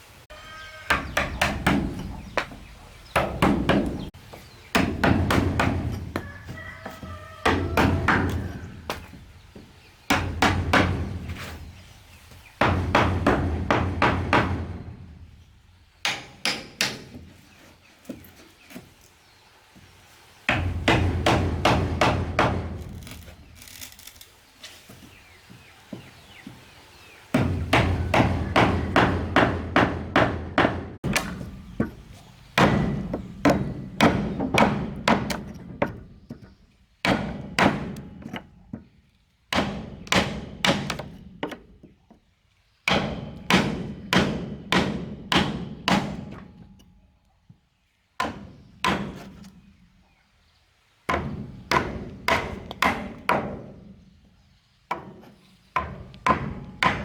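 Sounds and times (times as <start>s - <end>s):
hammer striking wood: 0.9s - 4.1s, 4.7s - 6.3s, 7.4s - 9.2s, 10.1s - 11.3s, 12.6s - 15.0s, 20.5s - 22.9s, 27.4s - 36.0s, 37.0s - 38.9s, 39.5s - 41.6s, 42.9s - 46.5s, 51.1s - 53.8s, 55.8s - 57.0s.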